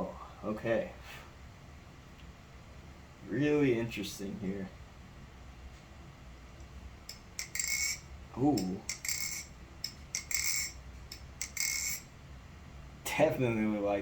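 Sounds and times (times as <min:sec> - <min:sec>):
bright metallic ring: 0:07.1 - 0:08.2, 0:08.8 - 0:12.1.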